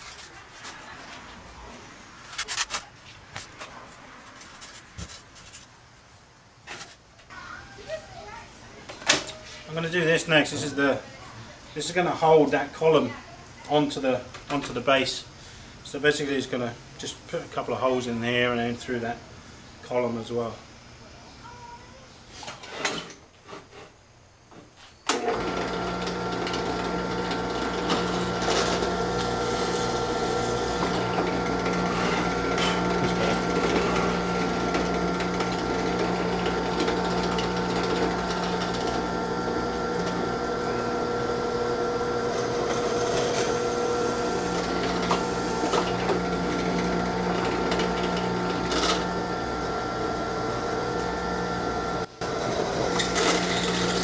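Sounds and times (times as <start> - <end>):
electric drill drilling metal: 25.1 - 54.0.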